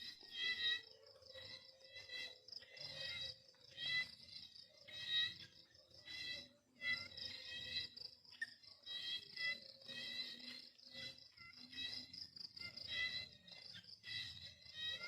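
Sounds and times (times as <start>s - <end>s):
crickets chirping: 0.0s - 15.0s.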